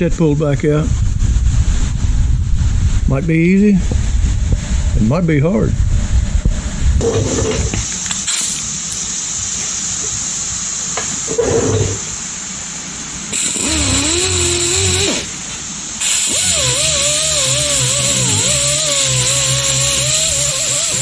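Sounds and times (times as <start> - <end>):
electric angle grinder whine: 7.0 - 12.1, 13.2 - 21.0.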